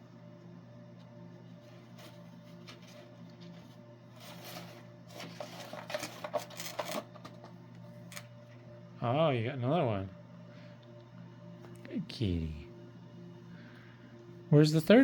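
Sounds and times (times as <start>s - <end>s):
low steady hum: 0.0s - 15.0s.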